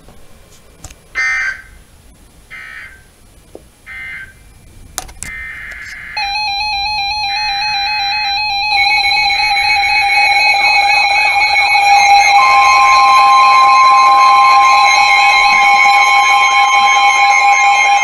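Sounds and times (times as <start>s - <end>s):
weather radio electronic alarm tone: 5.8s - 18.0s
buzzy digital data bursts: 6.2s - 18.0s.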